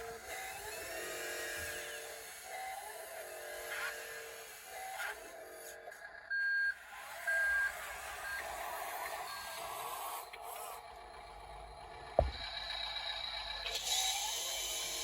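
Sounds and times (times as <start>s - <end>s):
small electric motors whining: 0.0s - 15.0s
sharp knock: 12.2s - 12.4s.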